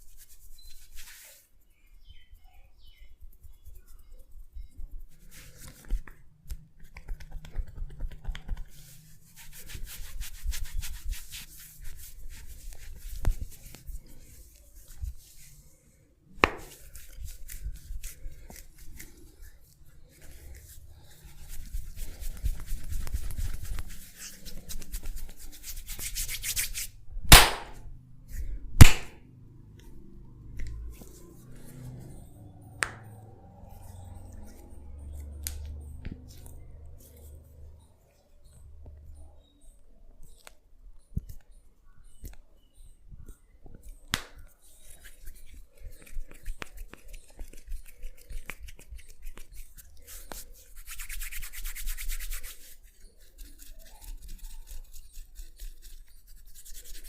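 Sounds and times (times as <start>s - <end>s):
hands rubbing skin and hair: 0.0s - 1.6s, 5.0s - 15.8s, 16.4s - 29.2s, 29.8s - 38.1s, 43.7s - 57.0s
sharp snaps: 27.3s - 27.9s, 28.8s - 29.2s.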